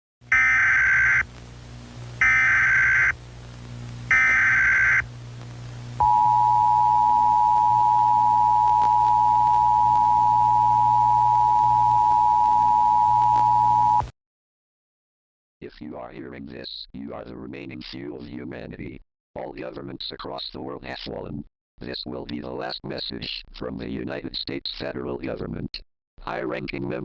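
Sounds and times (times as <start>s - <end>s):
two-tone alarm: 0.3s - 1.2s, 2.2s - 3.1s, 4.1s - 5.0s, 6.0s - 14.0s
warbling data tone bursts: 0.3s - 1.3s, 2.2s - 3.2s, 4.1s - 5.1s.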